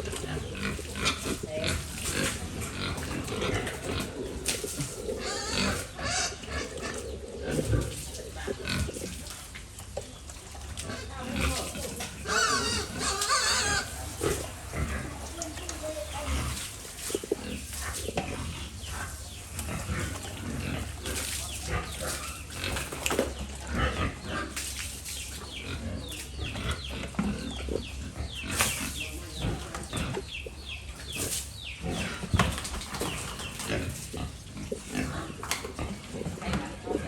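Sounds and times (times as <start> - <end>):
pigs squealing: 0.0 - 9.0, 11.0 - 15.3
pigs grunting: 0.0 - 37.0.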